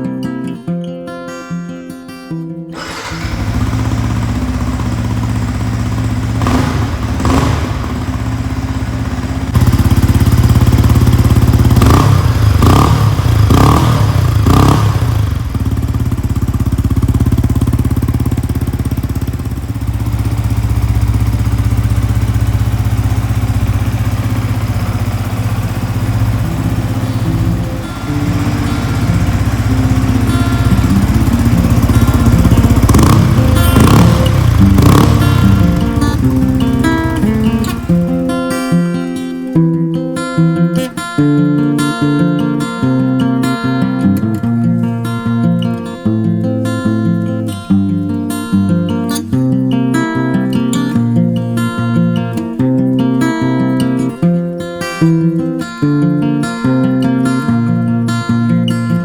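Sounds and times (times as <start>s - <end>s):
motorcycle engine idling and revving: 2.8s - 39.0s.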